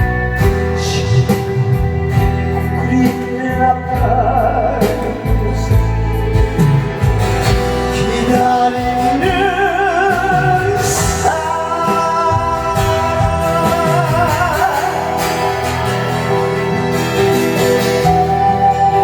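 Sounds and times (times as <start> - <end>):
instrumental accompaniment with low beat: 0.0 - 19.0
person singing with vibrato: 0.0 - 19.0.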